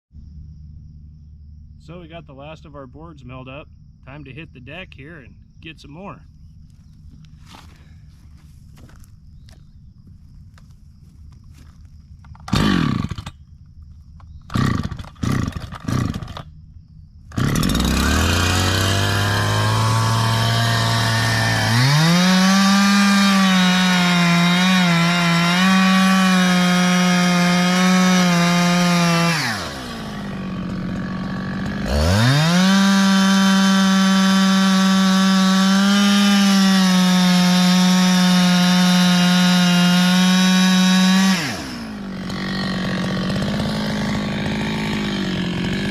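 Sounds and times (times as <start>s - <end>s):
chainsaw engine idling and revving: 6.6s - 45.9s
chainsaw starter cord pulls: 12.3s - 13.4s, 14.2s - 16.5s, 17.3s - 23.7s, 24.5s - 35.7s, 37.6s - 45.9s.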